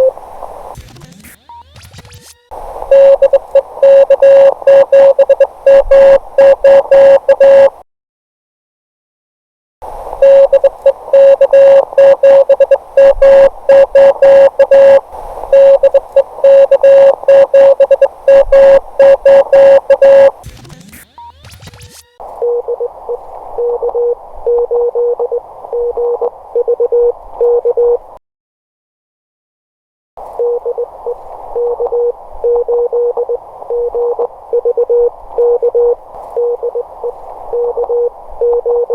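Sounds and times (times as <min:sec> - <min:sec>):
radio hiss: 0:00.0 - 0:07.7, 0:09.8 - 0:24.4
morse code keyed tone: 0:02.9 - 0:07.8, 0:10.2 - 0:20.4, 0:30.4 - 0:38.9.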